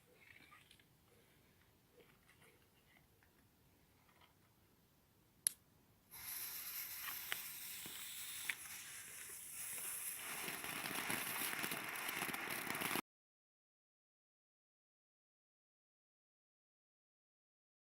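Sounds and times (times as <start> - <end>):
firework fizzing: 6.1 - 13.0
firework pops: 6.1 - 13.0
sharp crack: 6.2 - 13.0.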